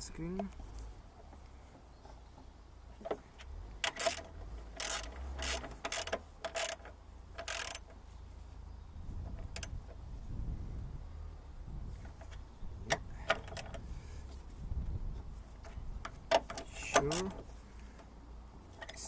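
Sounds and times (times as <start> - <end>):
ratchet wrench clicking: 3.8 - 7.9.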